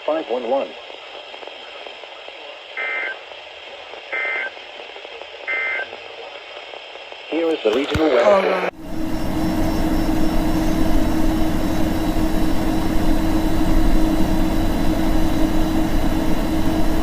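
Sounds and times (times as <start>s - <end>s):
radio static: 0.0s - 8.8s
low hum: 0.8s - 17.0s.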